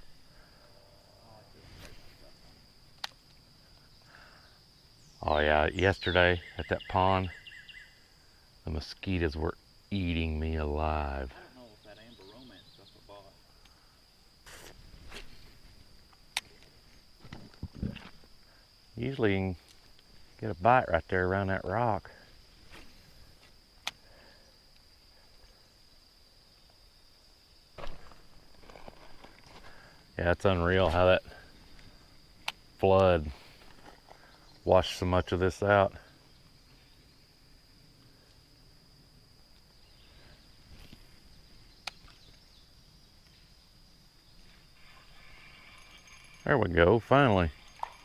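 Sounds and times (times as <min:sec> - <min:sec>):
high-pitched insect chorus: 0:00.0 - 0:48.0.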